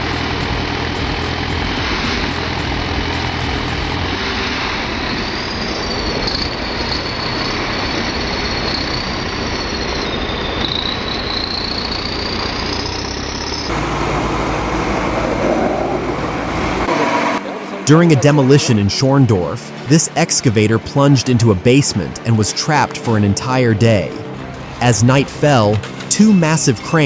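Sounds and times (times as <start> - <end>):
heavy crawler machinery running: 0.0 - 18.0, 24.1 - 27.0.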